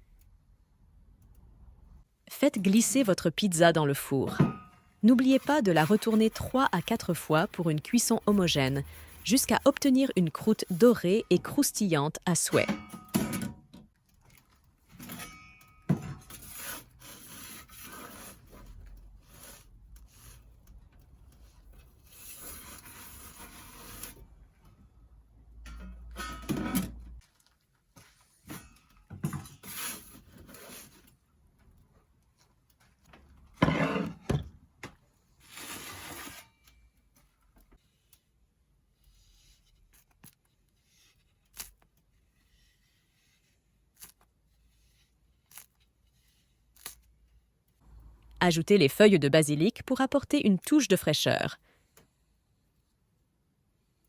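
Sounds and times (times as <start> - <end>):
pizza peel scraping on stone: 5.2 - 11.0, 16.4 - 20.4, 22.0 - 24.2, 33.6 - 34.4, 35.4 - 36.6.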